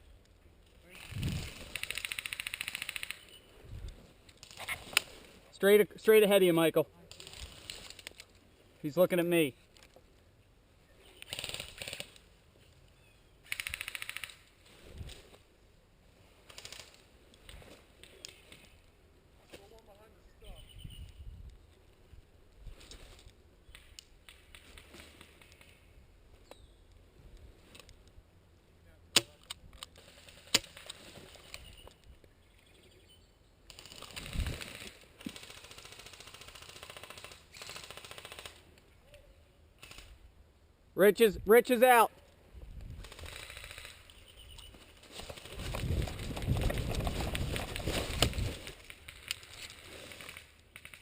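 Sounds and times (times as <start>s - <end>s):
airsoft gun firing bursts: 33.7s - 38.6s.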